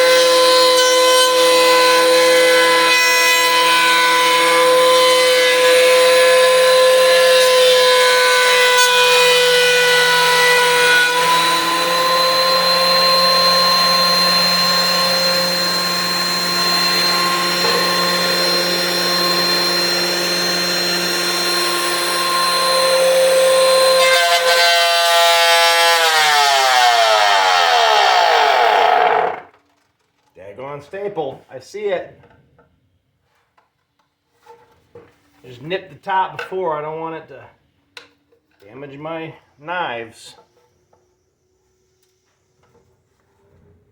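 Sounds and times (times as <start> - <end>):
thickness planer whining: 0.0 - 29.6.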